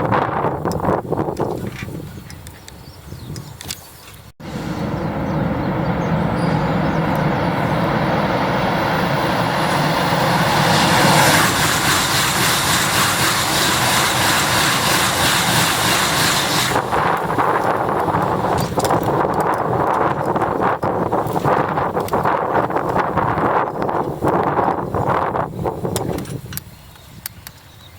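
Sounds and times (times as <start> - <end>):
train passing at high speed: 4.4 - 23.5.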